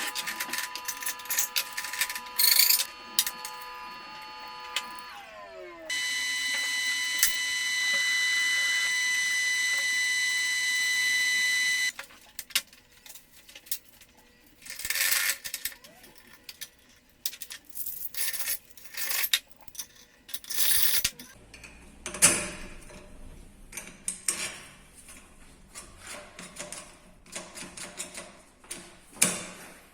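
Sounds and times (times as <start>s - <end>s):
machine high whine: 0.0s - 11.9s.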